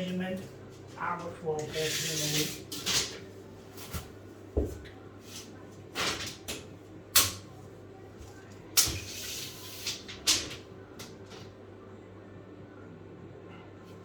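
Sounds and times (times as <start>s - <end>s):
tape measure blade rasping: 1.7s - 2.6s.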